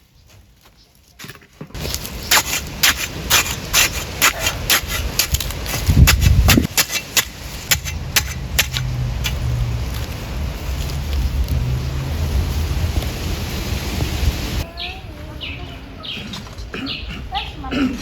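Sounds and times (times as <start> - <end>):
low wind-like rumble: 1.8 - 16.0.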